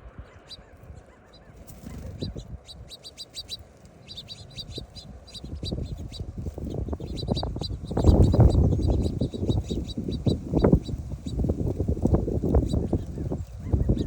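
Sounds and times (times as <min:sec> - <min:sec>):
small birds chirping: 0:00.0 - 0:14.0
low rustling rumbling noise: 0:03.6 - 0:14.0.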